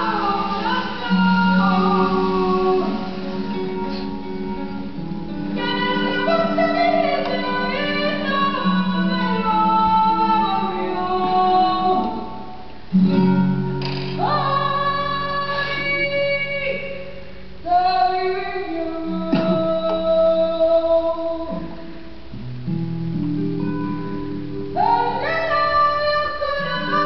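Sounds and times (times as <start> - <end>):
person singing long notes: 0.0 - 4.7.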